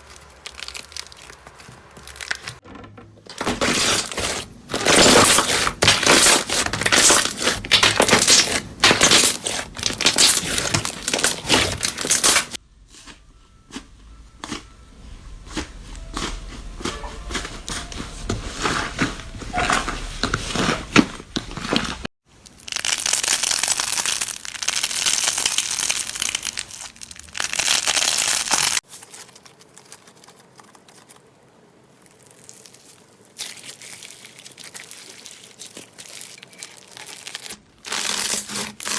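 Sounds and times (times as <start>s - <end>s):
slime crackling and popping: 0.0s - 2.6s, 3.4s - 12.6s, 18.5s - 31.2s, 31.9s - 38.9s.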